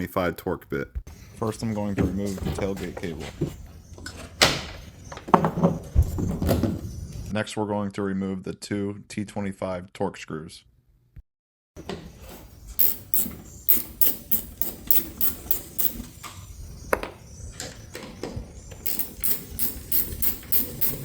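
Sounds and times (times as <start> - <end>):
hand ratchet clicking: 12.8 - 16.1, 18.8 - 21.0.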